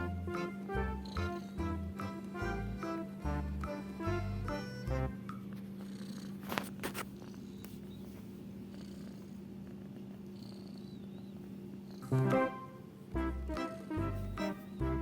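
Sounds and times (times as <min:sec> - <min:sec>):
cat purring: 0:00.0 - 0:04.8, 0:05.7 - 0:12.2.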